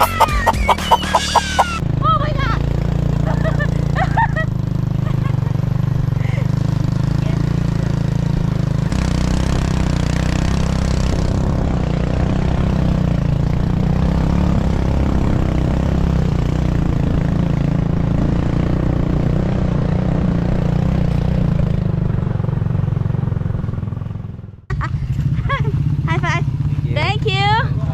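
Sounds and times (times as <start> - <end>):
motorcycle engine running: 0.0 - 27.9.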